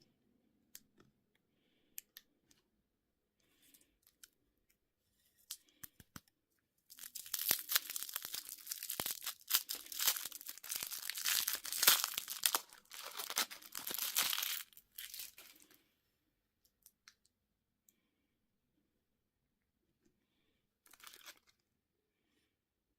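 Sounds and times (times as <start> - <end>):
plastic packaging tearing and crumpling: 6.9 - 15.7, 20.9 - 21.6.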